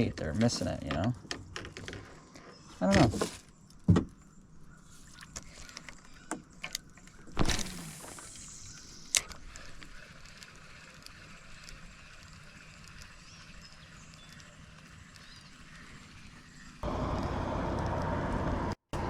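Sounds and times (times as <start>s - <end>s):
fishing line hissing out: 7.4s - 9.4s
faint hiss of reeling in: 7.5s - 12.9s
fishing reel click: 7.6s - 14.6s.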